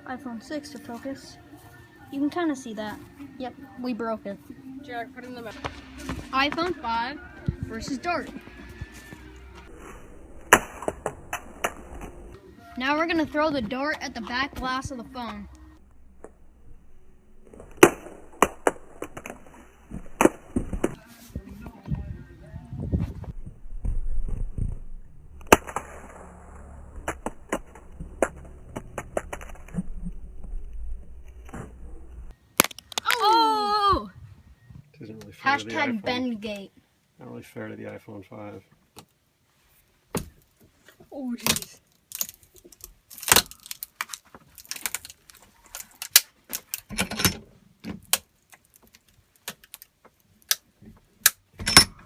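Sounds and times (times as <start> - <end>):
phone body cracking and crunching: 32.6 - 33.2, 41.4 - 46.9.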